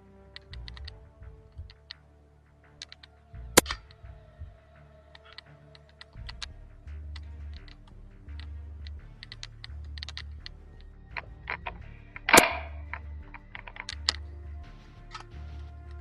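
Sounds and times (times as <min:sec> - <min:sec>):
background music with low beat: 0:00.0 - 0:16.0
airsoft guns popping: 0:02.8 - 0:04.1, 0:07.2 - 0:14.2
loud crack: 0:11.2 - 0:14.2.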